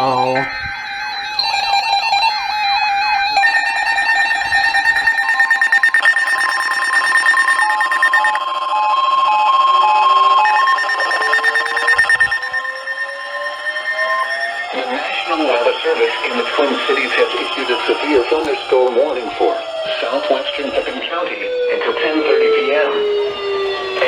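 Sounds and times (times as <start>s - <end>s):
steady electronic beeping tones: 1.4s - 18.3s
slowly rising alert tone: 3.4s - 15.1s
two-pitch alternating beep: 3.4s - 16.4s.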